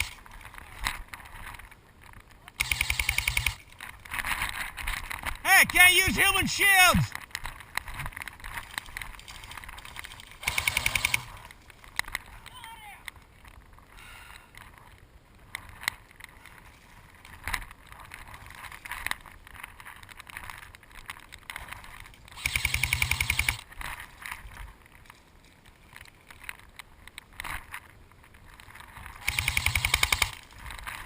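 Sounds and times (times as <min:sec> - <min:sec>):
toy gun full-auto bursts: 0:02.6 - 0:03.6, 0:10.4 - 0:11.4, 0:22.4 - 0:23.6, 0:29.2 - 0:30.4.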